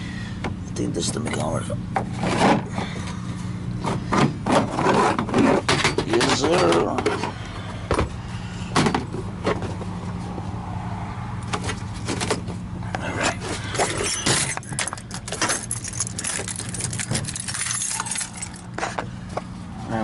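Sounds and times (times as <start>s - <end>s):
low machine hum: 0.0s - 20.0s
metal tools clinking: 13.2s - 19.0s.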